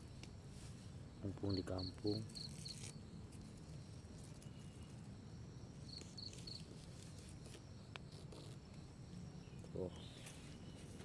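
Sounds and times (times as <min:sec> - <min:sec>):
cricket chirping: 0:00.0 - 0:11.0.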